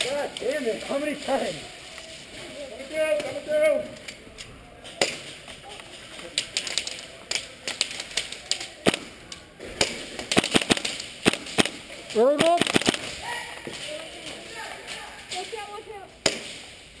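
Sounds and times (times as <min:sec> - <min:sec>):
airsoft guns firing: 0:07.6 - 0:09.2, 0:09.8 - 0:13.2.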